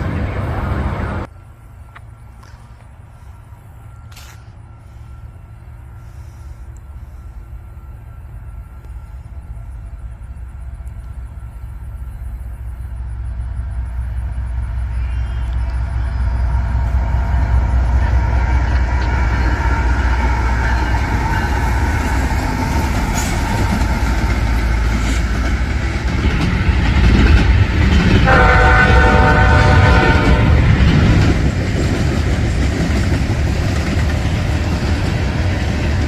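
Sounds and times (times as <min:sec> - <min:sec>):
train engine rumble: 0:00.0 - 0:36.0
locomotive air horn: 0:28.2 - 0:30.7.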